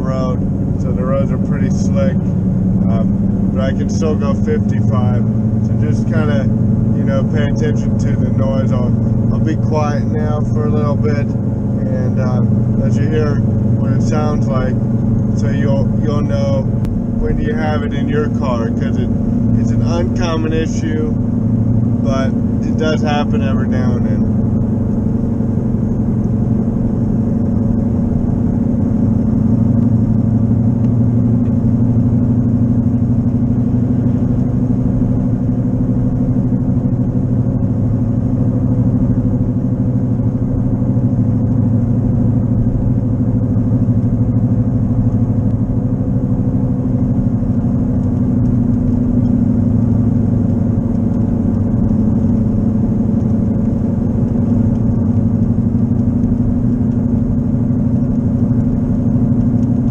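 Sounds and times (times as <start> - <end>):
car interior road drone: 0.0 - 59.9.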